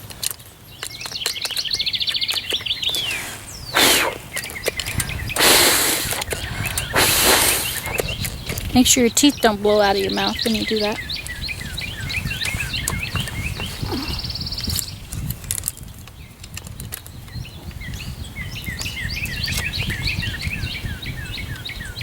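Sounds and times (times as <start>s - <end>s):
small bird chirping: 0.3s - 22.0s
buzzy bird trill: 0.8s - 15.1s.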